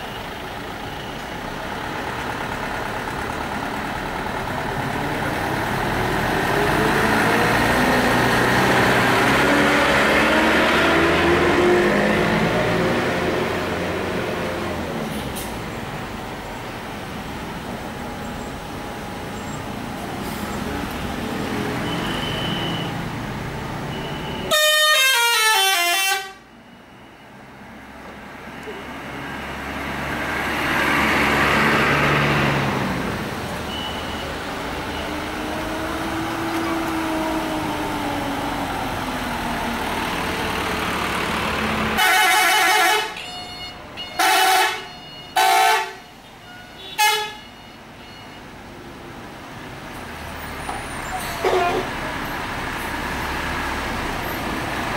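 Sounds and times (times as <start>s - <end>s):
passing traffic: 0.0s - 54.9s
bus horn descending notes: 24.3s - 26.4s, 42.0s - 48.2s.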